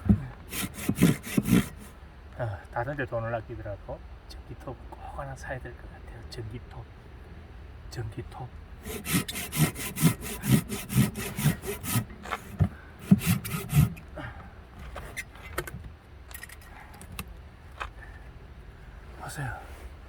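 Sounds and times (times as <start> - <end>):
hand saw cutting log: 0.1 - 2.0, 8.8 - 14.1.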